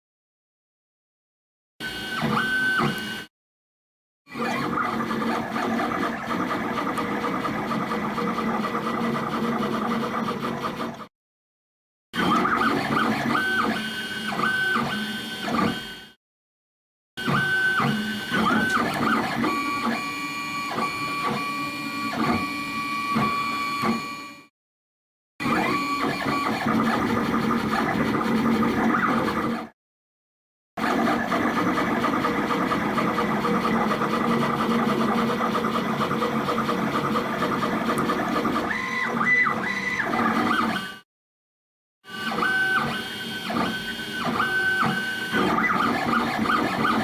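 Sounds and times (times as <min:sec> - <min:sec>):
stepper motors whirring: 0:17.3 - 0:24.3.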